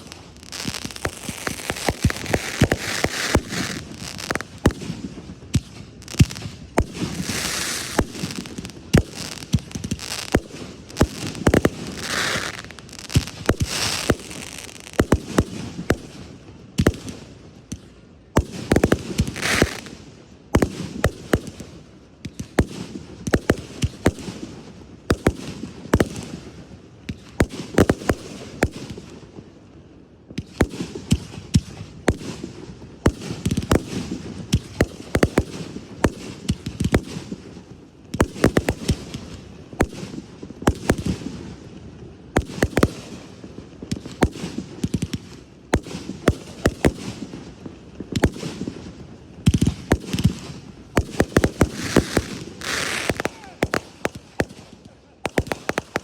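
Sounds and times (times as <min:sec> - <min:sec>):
fireworks bangs: 0:00.0 - 0:16.1, 0:18.4 - 0:20.0, 0:42.4 - 0:56.0.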